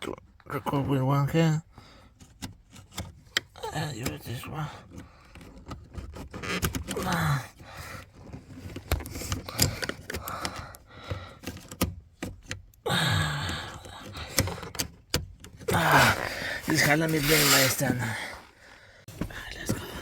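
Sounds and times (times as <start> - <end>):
plastic trim clicks and scraping: 2.1 - 12.8, 13.5 - 18.1
person grunting and breathing: 12.8 - 14.6, 15.7 - 19.0.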